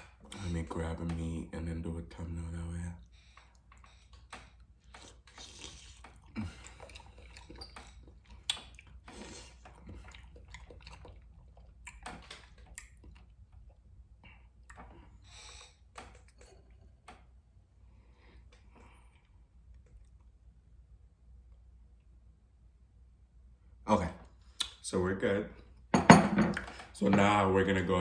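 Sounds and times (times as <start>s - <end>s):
wet squishing of food: 3.1s - 20.8s.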